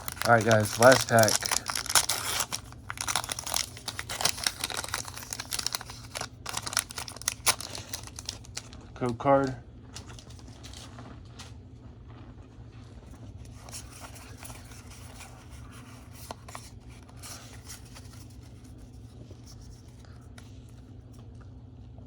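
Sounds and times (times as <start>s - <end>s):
cards scraping: 0.0s - 8.7s, 13.4s - 20.4s.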